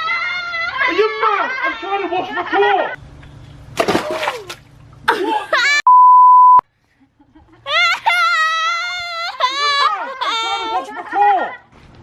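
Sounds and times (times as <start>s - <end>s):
censor bleep: 5.9s - 6.6s.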